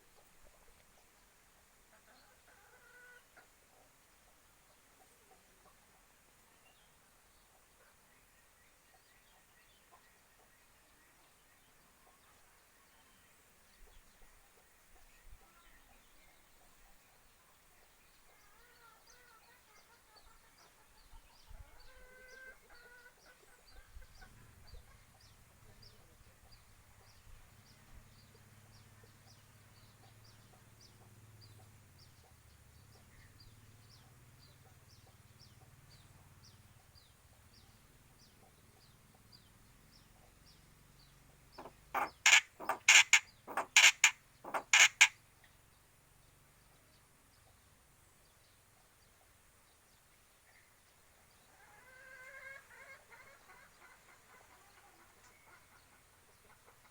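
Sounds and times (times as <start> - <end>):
faint bird twittering: 38.5 - 45.2
starling harsh scolding calls: 41.6 - 45.2.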